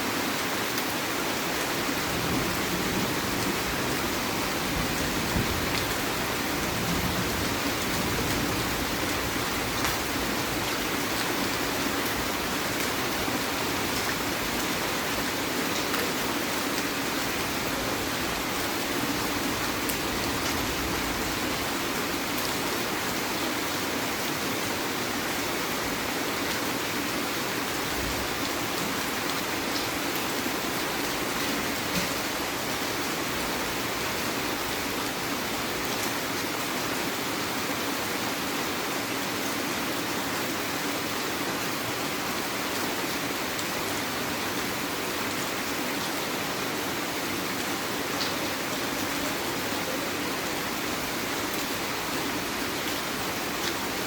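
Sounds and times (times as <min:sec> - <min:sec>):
heavy rain hiss: 0:00.0 - 0:54.0.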